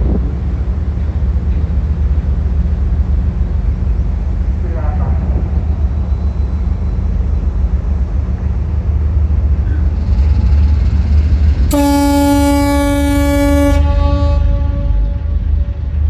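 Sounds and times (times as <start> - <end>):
ship engines rumbling: 0.0 - 16.0
ship's horn blast: 11.7 - 16.0.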